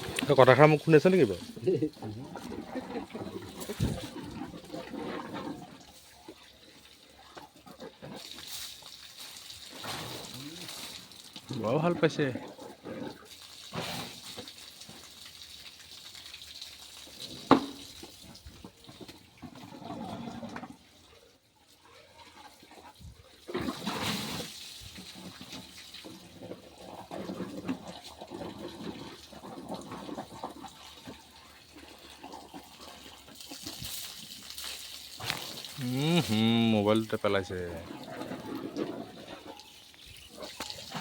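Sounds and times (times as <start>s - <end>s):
water splashing and pouring: 0.0s - 41.0s.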